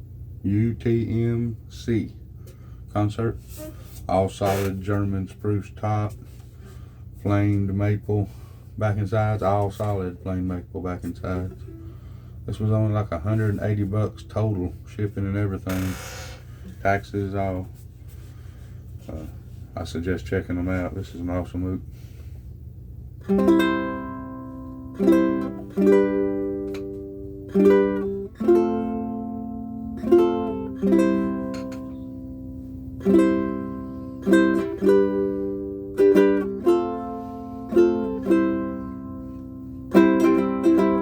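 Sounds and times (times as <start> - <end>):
ukulele strummed chords: 23.2 - 41.0.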